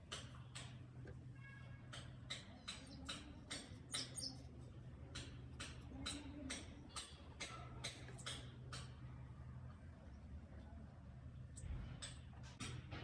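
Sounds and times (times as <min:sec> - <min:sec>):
steady low hum: 0:00.0 - 0:13.0
sharp chirping clicks: 0:01.9 - 0:04.4, 0:05.1 - 0:09.0.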